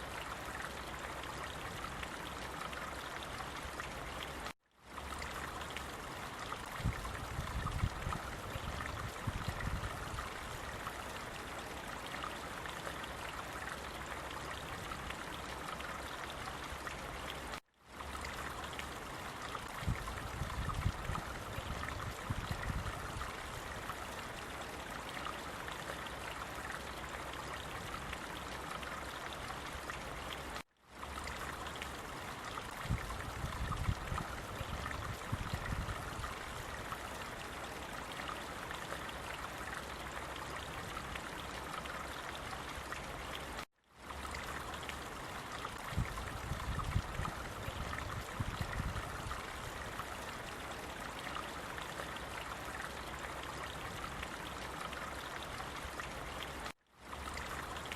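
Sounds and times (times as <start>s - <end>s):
low water gurgling: 0.0s - 57.9s
stream water rushing: 0.0s - 57.9s.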